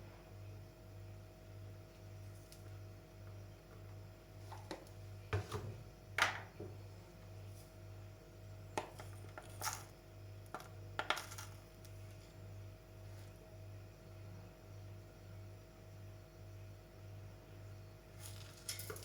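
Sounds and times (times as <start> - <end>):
electrical hum: 0.0 - 19.0.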